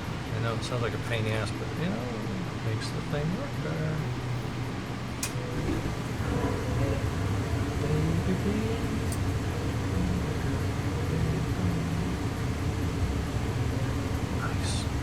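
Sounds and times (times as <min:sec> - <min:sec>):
mechanical fan hum: 0:00.0 - 0:15.0
small click: 0:05.2 - 0:05.4.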